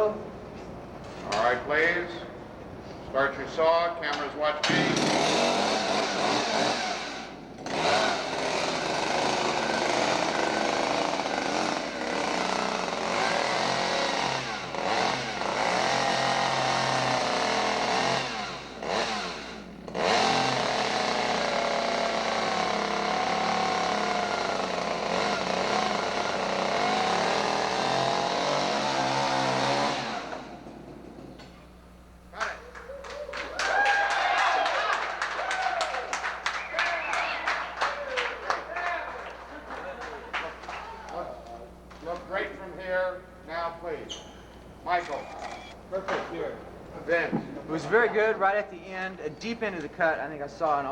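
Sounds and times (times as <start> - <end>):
chainsaw revving: 4.6 - 32.2.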